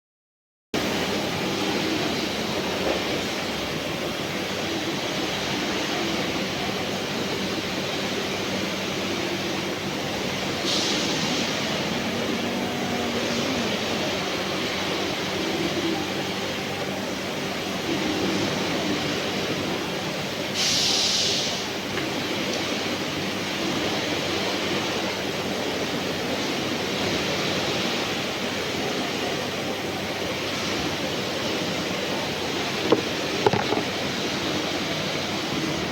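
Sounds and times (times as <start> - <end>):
machinery noise: 0.8 - 22.2, 24.2 - 35.9
brief hiss: 10.6 - 11.7, 20.6 - 21.7.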